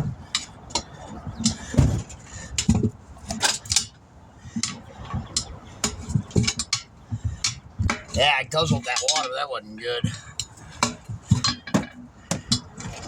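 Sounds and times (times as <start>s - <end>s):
metal tools clinking: 7.9s - 9.5s
heavy metal knocks: 10.0s - 12.7s.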